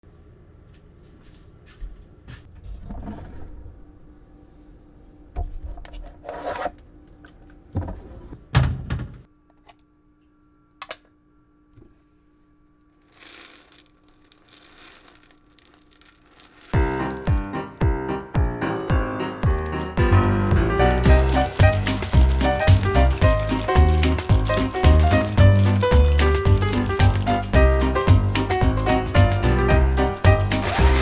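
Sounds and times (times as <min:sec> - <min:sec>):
knocks of objects being handled: 0:16.7 - 0:17.5, 0:18.4 - 0:31.0.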